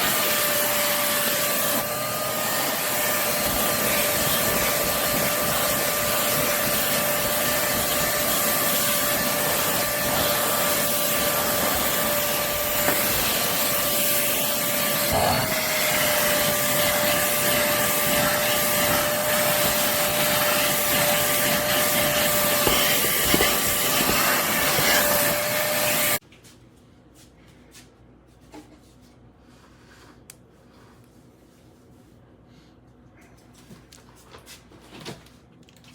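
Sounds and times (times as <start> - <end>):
stick vacuum running: 0.0 - 26.2.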